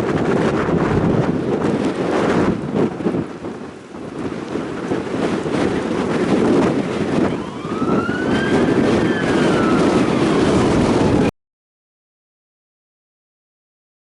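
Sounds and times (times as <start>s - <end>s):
steady rain: 0.0s - 7.8s, 8.5s - 11.3s
wind: 0.0s - 11.3s
siren wailing: 7.2s - 11.3s.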